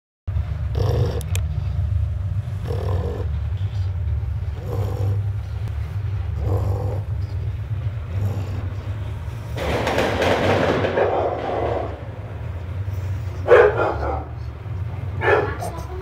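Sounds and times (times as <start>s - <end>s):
steady low hum: 0.3s - 16.0s
puppy snoring: 0.7s - 1.5s, 2.6s - 9.8s.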